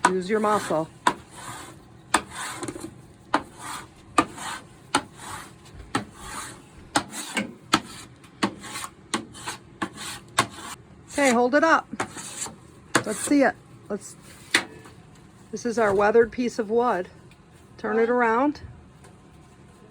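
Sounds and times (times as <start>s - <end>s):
hand scrubbing wooden board: 0.1s - 11.4s.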